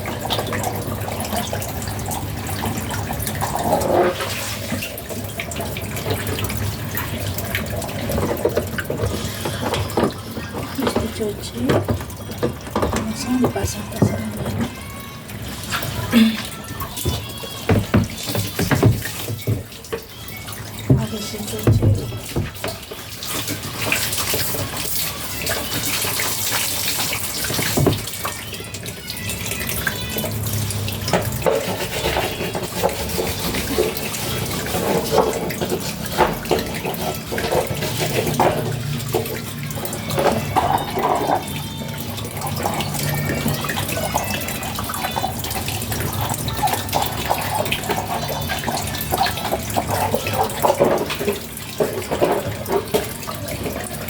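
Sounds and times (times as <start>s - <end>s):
tap water running and splashing: 0.0s - 54.0s
knocks and clatter: 16.9s - 20.1s, 27.4s - 28.2s.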